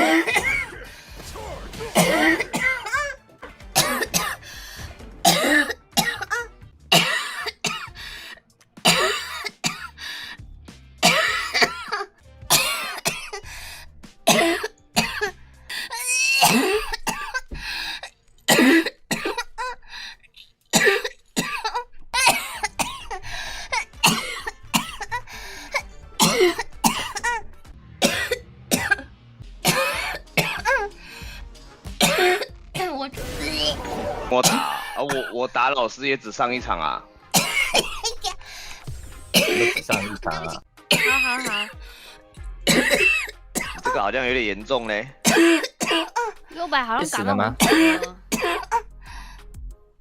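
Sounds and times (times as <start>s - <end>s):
girl coughing: 0.0s - 0.8s, 1.8s - 3.2s, 3.8s - 4.4s, 5.2s - 7.9s, 8.9s - 9.9s, 11.0s - 13.4s, 14.3s - 15.3s, 15.9s - 17.5s, 18.5s - 19.8s, 20.7s - 25.2s, 26.2s - 27.4s, 28.0s - 29.0s, 29.7s - 30.9s, 32.0s - 33.0s, 34.4s - 35.3s, 37.4s - 38.4s, 39.4s - 41.8s, 42.7s - 44.0s, 45.2s - 46.4s, 47.0s - 48.9s.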